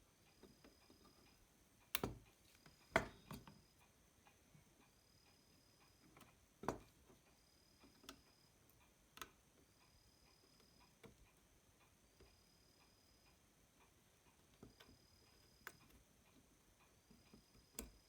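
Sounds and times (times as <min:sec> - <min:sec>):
faint tool clicks and taps: 0:00.3 - 0:04.4.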